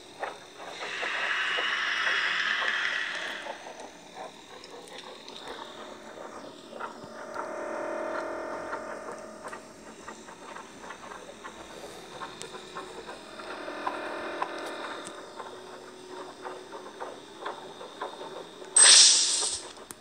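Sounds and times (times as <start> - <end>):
steady electronic tone: 13.2 - 15.3
electronic clicks and crackles: 13.3 - 15.3, 18.8 - 20.0.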